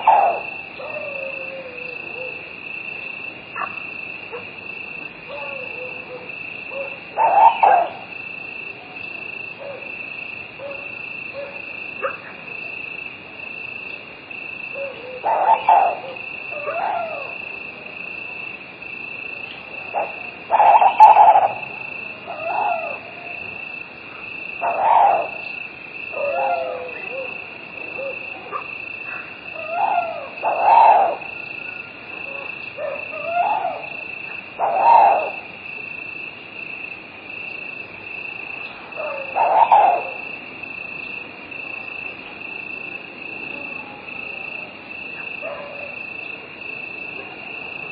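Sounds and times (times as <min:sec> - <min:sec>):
hoot-like animal calls: 0:00.0 - 0:02.6, 0:05.2 - 0:08.4, 0:09.2 - 0:12.8, 0:14.7 - 0:17.7, 0:19.3 - 0:36.3, 0:38.4 - 0:42.1, 0:43.4 - 0:46.4
insects trilling: 0:00.0 - 0:47.9.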